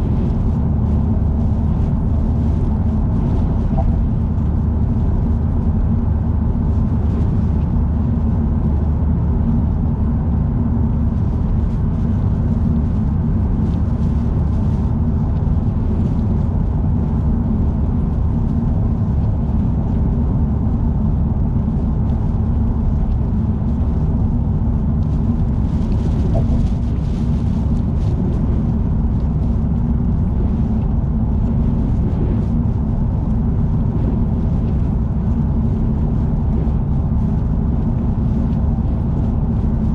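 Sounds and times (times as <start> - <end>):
road and tyre rumble: 0.0 - 39.9
wind noise: 0.0 - 39.9.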